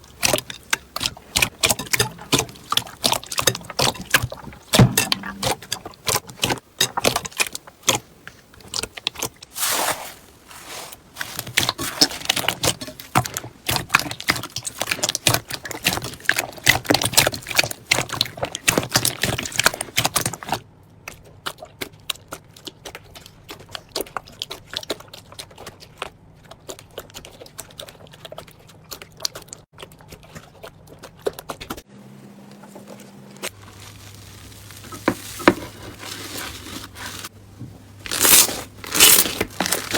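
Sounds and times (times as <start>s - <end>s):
slime squeezed crackling: 38.0s - 39.9s.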